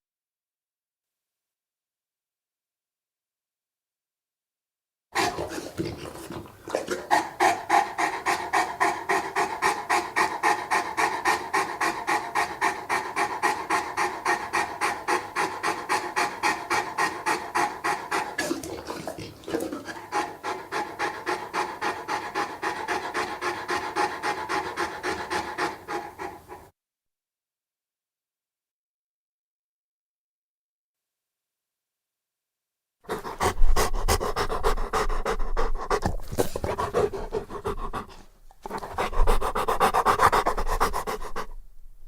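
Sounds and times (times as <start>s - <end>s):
dog panting: 5.2s - 26.7s, 33.1s - 41.7s.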